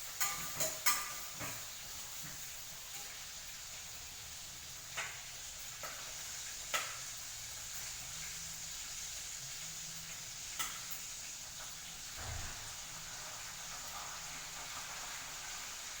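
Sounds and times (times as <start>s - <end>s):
utensil striking pan: 0.0s - 3.2s
food sizzling in a pan: 0.0s - 16.0s.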